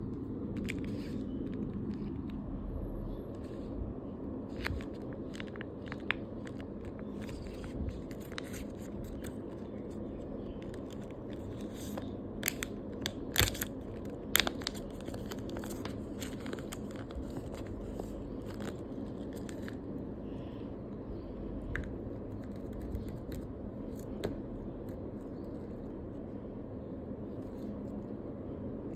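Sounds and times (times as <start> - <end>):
plastic crinkling and crackling: 4.5 - 20.0.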